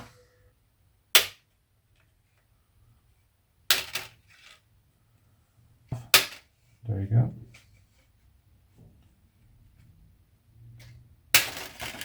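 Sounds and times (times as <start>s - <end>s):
sharp plastic snaps: 1.2s - 1.5s.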